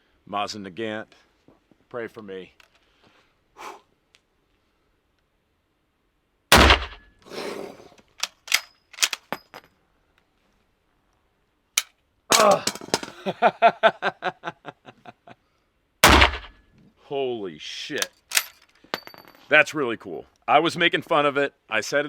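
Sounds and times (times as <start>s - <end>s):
rifle shot with echo: 6.5s - 7.0s, 16.0s - 16.6s
metallic clicks and clinks: 8.1s - 9.7s, 18.0s - 19.5s
person speaking: 12.3s - 13.2s, 17.1s - 18.1s.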